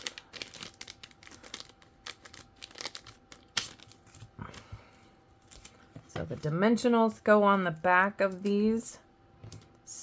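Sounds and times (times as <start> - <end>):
paper and plastic crinkling: 0.0 - 4.8, 5.4 - 6.4.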